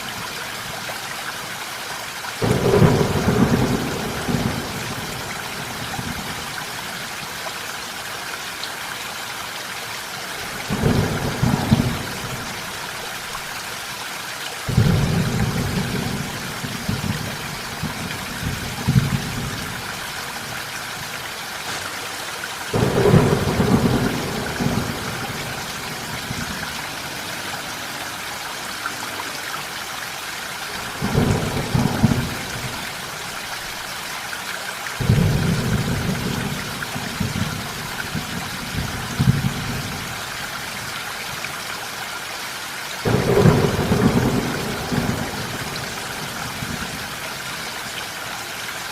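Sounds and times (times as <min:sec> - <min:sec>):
steady rain: 0:00.0 - 0:48.9
thunder rumbling: 0:02.4 - 0:06.4, 0:10.6 - 0:12.7, 0:14.7 - 0:19.9, 0:22.7 - 0:28.5, 0:30.8 - 0:33.1, 0:35.0 - 0:40.1, 0:43.1 - 0:47.2.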